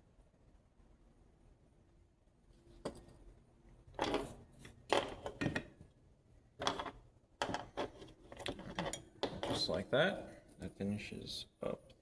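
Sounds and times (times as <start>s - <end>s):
tools clattering on workbench: 6.6s - 9.8s.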